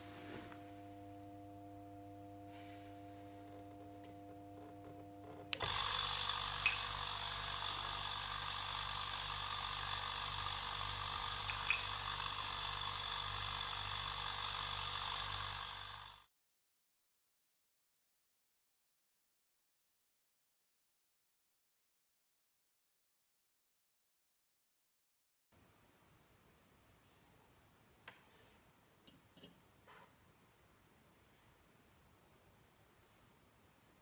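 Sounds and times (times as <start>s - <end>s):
refrigerator compressor humming: 0.0s - 16.0s.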